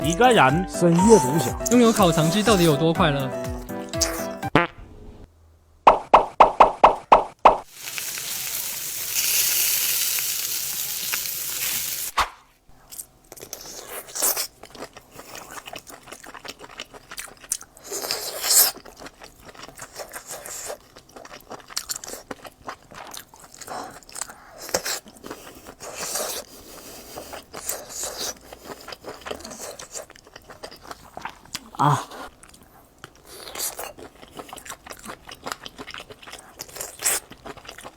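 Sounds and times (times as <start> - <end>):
sausage skins crunching: 7.7 - 12.2
steady hiss: 7.7 - 12.2
chewing sausages: 12.8 - 37.9.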